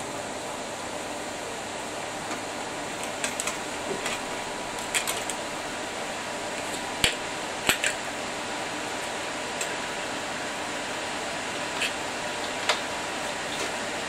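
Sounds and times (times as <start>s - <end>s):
fans whirring: 0.0s - 14.0s.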